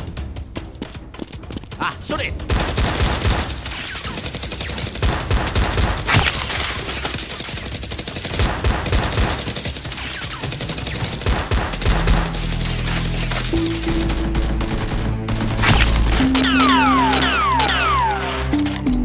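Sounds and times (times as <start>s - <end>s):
rapid automatic gunfire: 1.8s - 16.8s.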